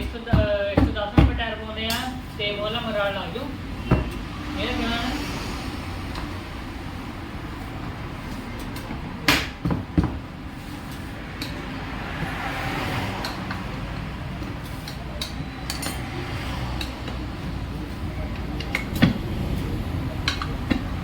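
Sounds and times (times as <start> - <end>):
metal tools clicking and clinking: 14.8 - 16.2.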